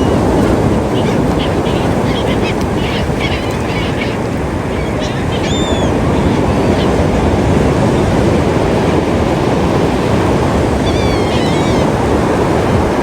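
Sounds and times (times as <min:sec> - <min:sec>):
high-pitched bird calls: 0:00.0 - 0:07.0
ocean surf washing on beach: 0:00.0 - 0:13.0.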